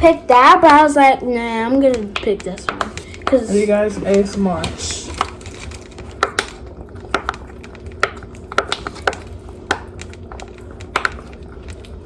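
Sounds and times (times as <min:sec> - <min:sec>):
fidget toy bubbles popping: 0:06.1 - 0:12.0.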